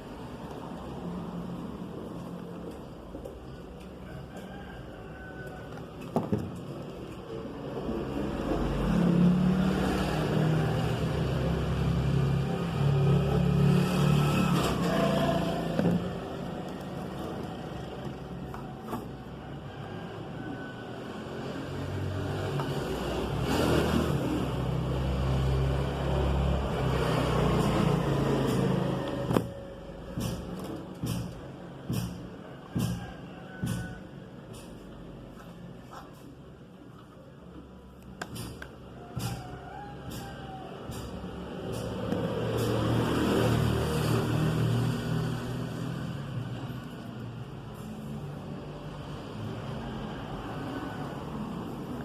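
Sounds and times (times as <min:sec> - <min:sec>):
vehicle engine passing by: 0:07.3 - 0:18.5, 0:19.2 - 0:31.8, 0:38.3 - 0:52.0.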